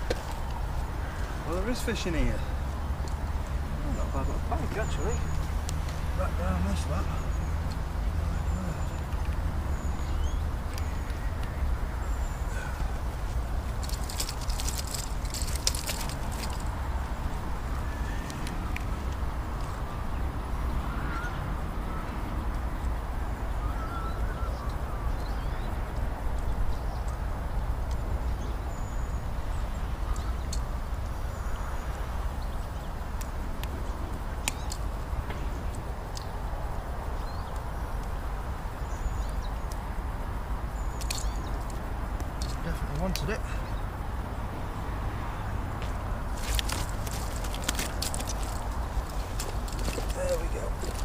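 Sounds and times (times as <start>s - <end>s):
faint short bird calls: 23.6s - 25.6s.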